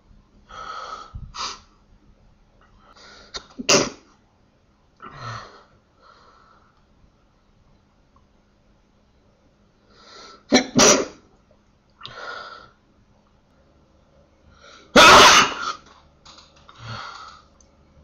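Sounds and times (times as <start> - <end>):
person sneezing: 3.4 - 4.0, 10.5 - 11.2, 15.0 - 15.8.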